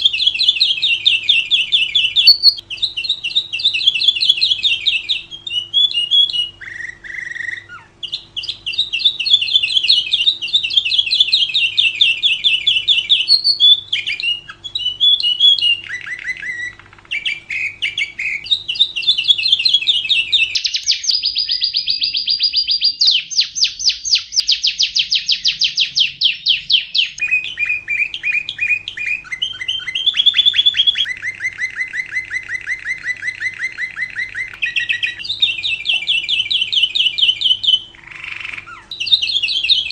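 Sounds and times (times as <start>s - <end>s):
lovebird chattering trills: 0.0s - 39.9s.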